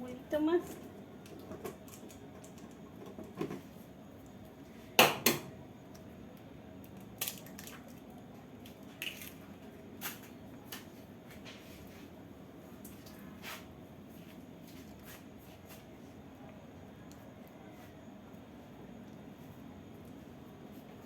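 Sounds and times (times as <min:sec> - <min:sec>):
egg cracking on container: 0:06.8 - 0:08.1.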